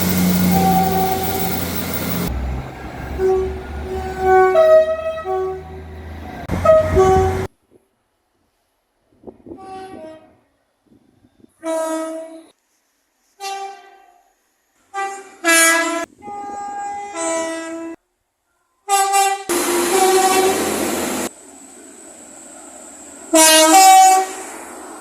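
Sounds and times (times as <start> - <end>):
train air horn blasts: 0.0 - 2.4, 3.0 - 7.5, 13.4 - 14.2, 14.9 - 18.0, 18.9 - 20.9, 23.4 - 24.6.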